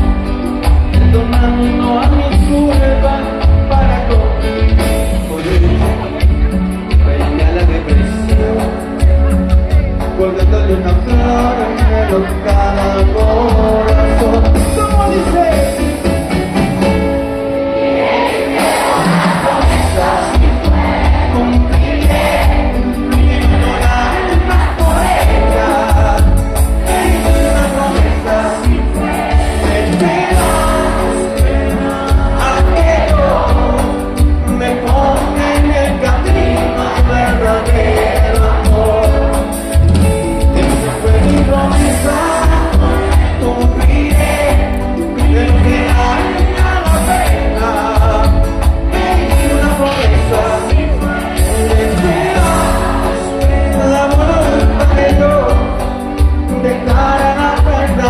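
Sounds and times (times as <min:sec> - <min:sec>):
person singing with full band: 0:00.0 - 0:58.0
pulsing bass beat: 0:19.5 - 0:58.0.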